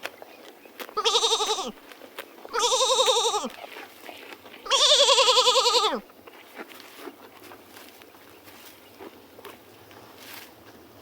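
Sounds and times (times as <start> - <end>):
goat bleating: 1.0 - 1.8, 2.5 - 3.6, 4.6 - 6.0.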